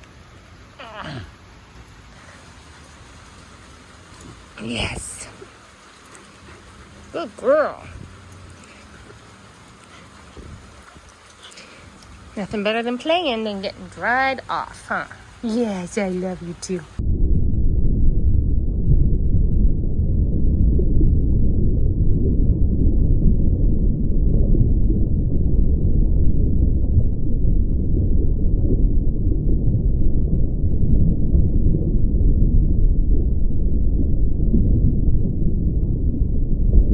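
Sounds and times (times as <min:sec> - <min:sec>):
low rumbling on microphone: 0:04.1 - 0:11.1, 0:16.8 - 0:36.9.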